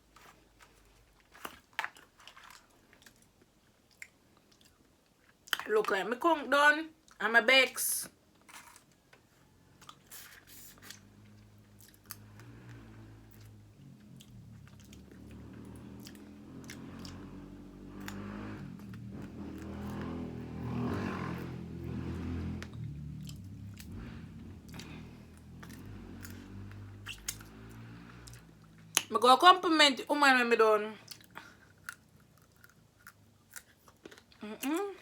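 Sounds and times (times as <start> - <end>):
chewing and biting food: 0.1 - 5.7, 9.7 - 20.7, 22.0 - 29.1, 31.0 - 34.7
wet mouth clicks: 27.0 - 27.5.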